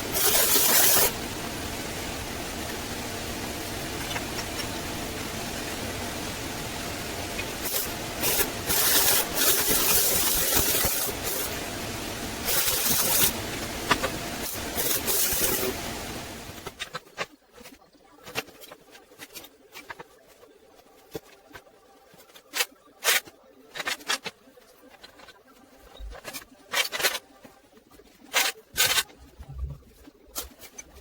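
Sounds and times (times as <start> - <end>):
loud hissing bursts: 0.0 - 4.2, 4.9 - 16.6
machine running: 0.0 - 16.8.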